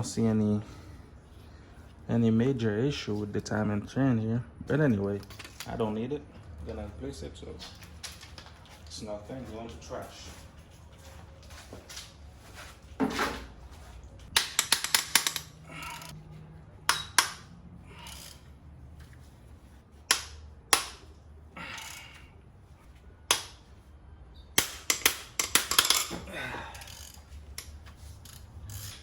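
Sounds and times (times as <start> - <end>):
metal tools clinking and knocking: 14.4 - 16.1, 24.8 - 29.0.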